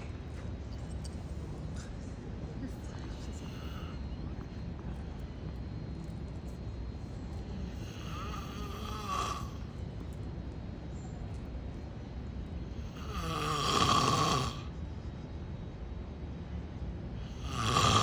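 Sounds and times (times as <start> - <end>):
man snoring: 7.7 - 9.6, 12.8 - 14.7, 17.3 - 18.0.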